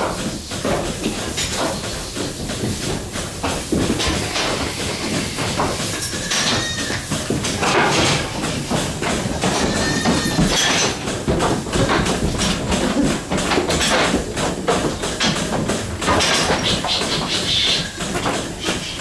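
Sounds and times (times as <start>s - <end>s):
clattering knocks: 0.0s - 17.4s
goats bleating: 9.4s - 10.5s.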